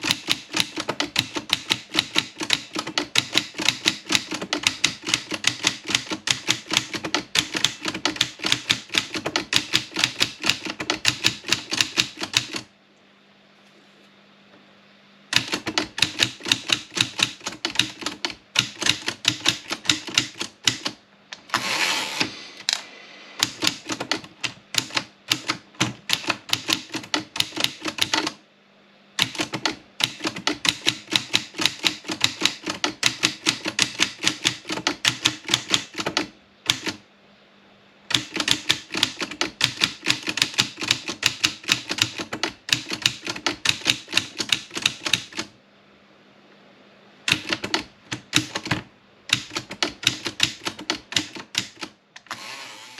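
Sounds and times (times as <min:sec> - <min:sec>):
typewriter key strikes: 0:00.0 - 0:12.6, 0:15.3 - 0:21.0, 0:23.4 - 0:28.4, 0:29.2 - 0:37.0, 0:38.1 - 0:45.5, 0:47.3 - 0:52.0
typewriter rasping sweep: 0:00.0 - 0:12.6, 0:15.4 - 0:28.4, 0:47.3 - 0:52.9.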